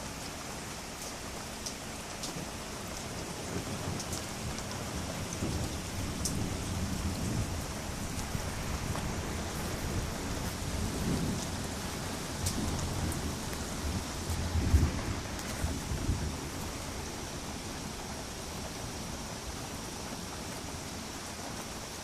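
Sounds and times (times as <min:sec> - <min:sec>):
steady rain hissing: 0:00.0 - 0:22.0
low thunder rumbling: 0:03.2 - 0:19.2.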